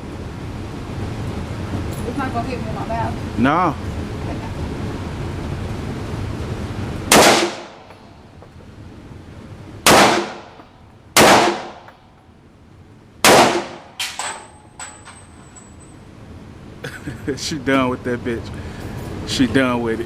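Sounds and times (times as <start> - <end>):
rifle shots: 7.1 - 7.9, 9.8 - 10.6, 11.2 - 11.9, 13.2 - 14.4.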